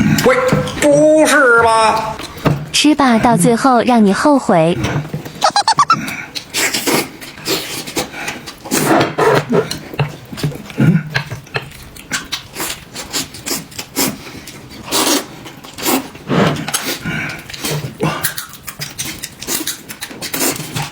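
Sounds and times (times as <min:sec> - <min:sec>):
person eating noisily: 0:05.4 - 0:06.0.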